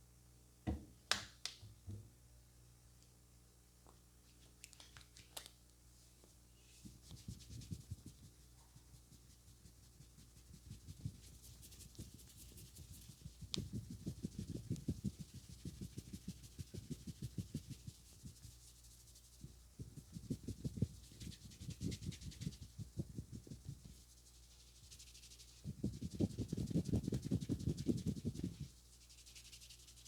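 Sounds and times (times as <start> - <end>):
palms rubbing on hair: 6.7 - 30.0.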